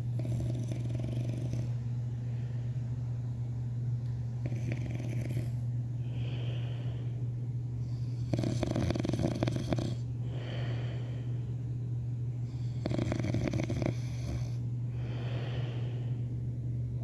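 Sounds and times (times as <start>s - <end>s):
rattling snores: 0.0s - 1.7s, 4.4s - 5.7s, 7.9s - 10.0s, 12.5s - 14.6s
steady low hum: 0.0s - 17.0s
soft hissing breath: 4.4s - 11.6s, 12.4s - 16.4s.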